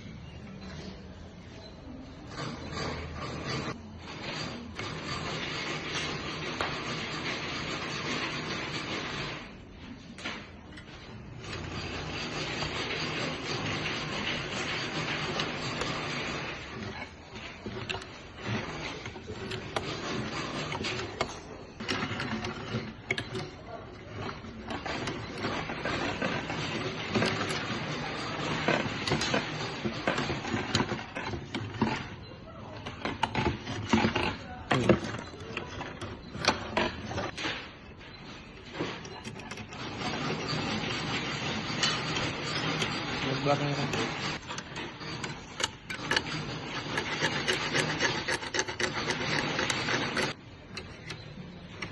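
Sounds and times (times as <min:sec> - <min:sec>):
fence weaving machine clatter: 0:02.3 - 0:09.6, 0:11.3 - 0:32.2, 0:38.6 - 0:51.9.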